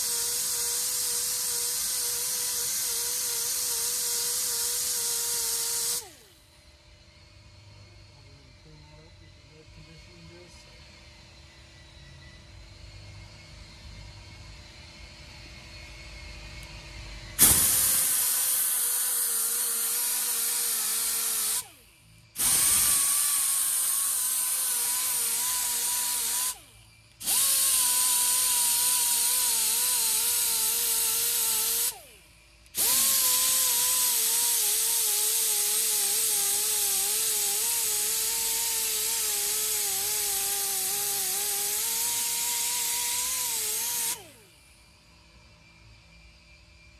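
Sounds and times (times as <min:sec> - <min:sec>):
power sander grinding metal: 0:00.0 - 0:06.2, 0:17.4 - 0:21.7, 0:22.4 - 0:26.6, 0:27.2 - 0:32.1, 0:32.8 - 0:44.4.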